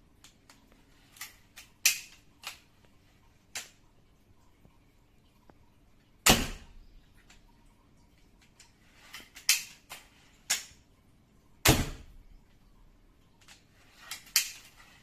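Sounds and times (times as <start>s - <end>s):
sharp knocks in a small room: 6.2s - 6.8s, 11.6s - 12.2s.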